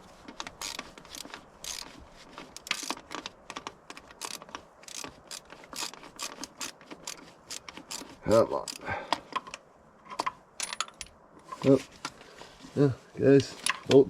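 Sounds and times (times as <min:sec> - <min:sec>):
hand ratchet clicking: 0:00.4 - 0:01.9, 0:02.5 - 0:03.1, 0:03.9 - 0:08.9.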